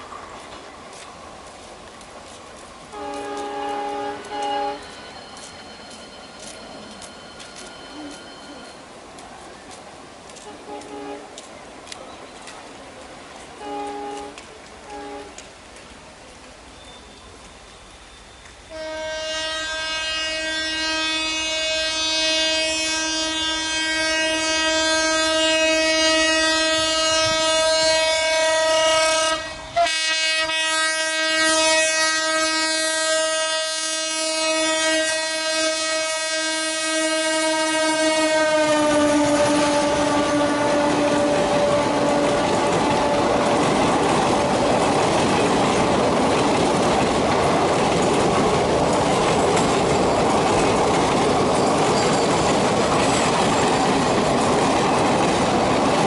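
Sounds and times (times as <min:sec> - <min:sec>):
train coaches rolling past: 0:00.0 - 0:56.0
locomotive horn blast: 0:02.9 - 0:05.0, 0:10.4 - 0:11.4, 0:13.6 - 0:15.4, 0:18.7 - 0:43.7.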